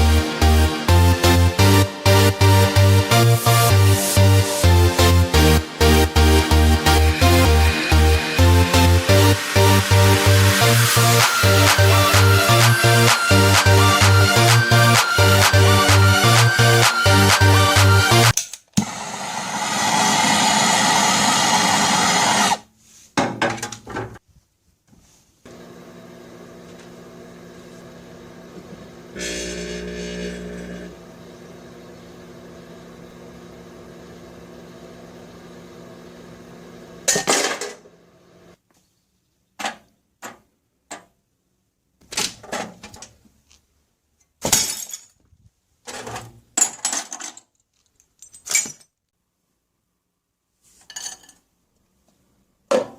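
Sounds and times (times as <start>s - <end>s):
loud burst of noise: 18.8s - 22.6s
microwave oven humming: 25.5s - 37.2s.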